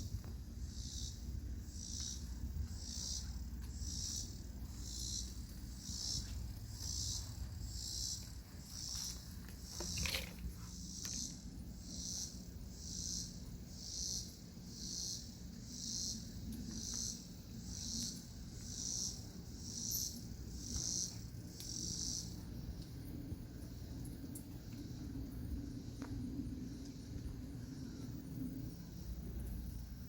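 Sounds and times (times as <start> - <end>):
insect buzzing pulses: 0.0 - 22.3.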